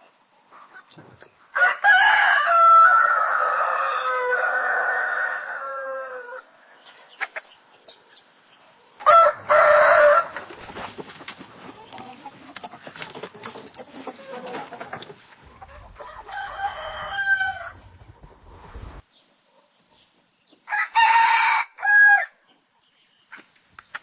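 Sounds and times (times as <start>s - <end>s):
busy farmyard background: 0.0s - 24.0s
rooster crowing: 1.6s - 6.5s, 9.0s - 10.4s, 15.7s - 17.9s, 20.7s - 22.3s.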